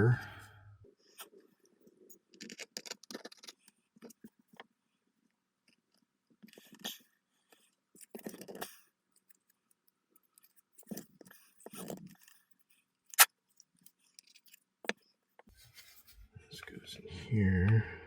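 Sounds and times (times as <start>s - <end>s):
plastic parts rattling: 2.3s - 4.2s.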